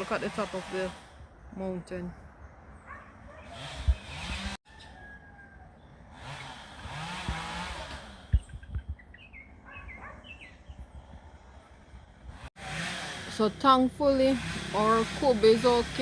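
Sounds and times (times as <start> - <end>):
small birds chirping: 8.3 - 12.0.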